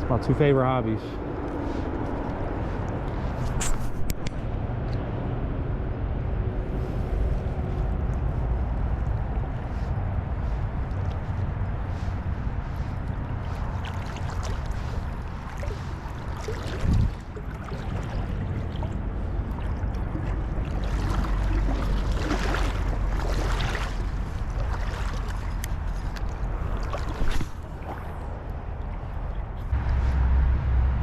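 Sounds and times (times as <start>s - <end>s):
wind rumble on microphone: 0.0s - 31.0s
river water sloshing and splashing: 6.7s - 30.3s.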